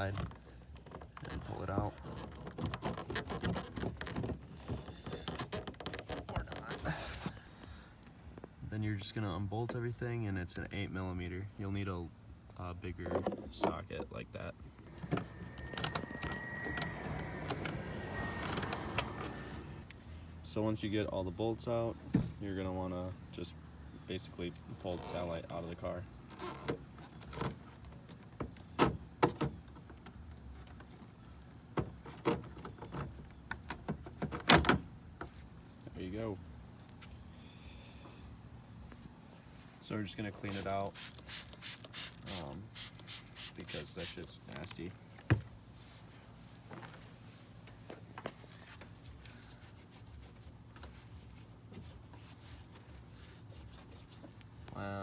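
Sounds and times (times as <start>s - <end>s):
rubbing and scrubbing: 49.4s - 54.4s.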